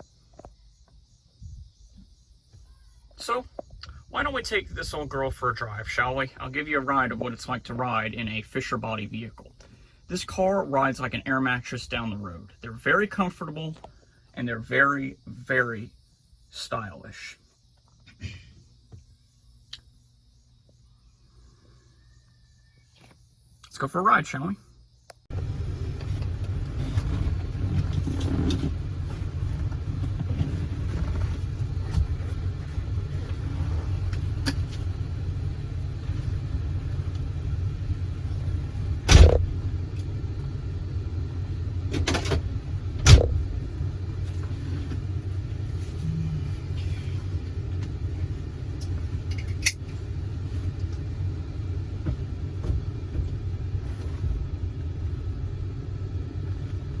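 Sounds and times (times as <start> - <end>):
car engine and road rumble: 0.0 - 18.0, 25.2 - 57.0
sharp loud thumps: 39.0 - 39.6.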